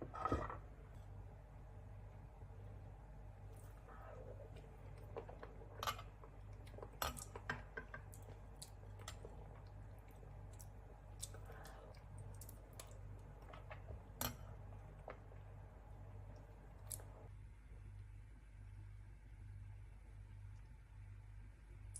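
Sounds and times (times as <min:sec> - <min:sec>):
faint low hum: 0:00.0 - 0:21.9.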